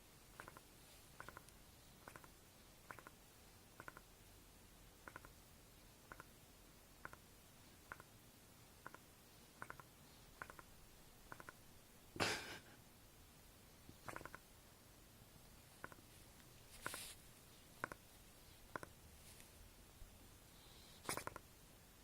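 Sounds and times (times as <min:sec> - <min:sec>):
small dog snoring: 0:20.6 - 0:21.4
harsh snort: 0:20.9 - 0:21.4.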